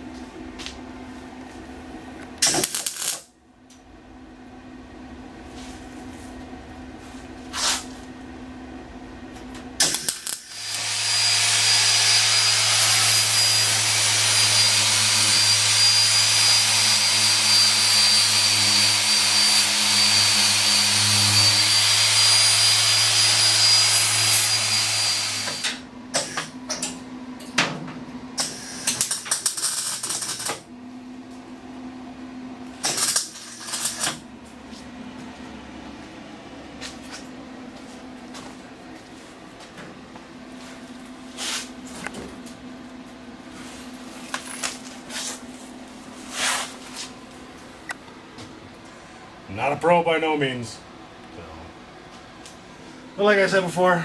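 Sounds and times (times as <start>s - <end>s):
angle grinder whining: 9.8s - 26.5s.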